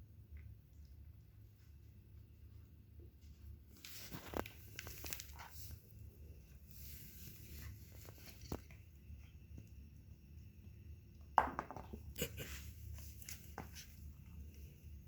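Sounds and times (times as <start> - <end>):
crinkling and rustling: 3.2 - 8.9.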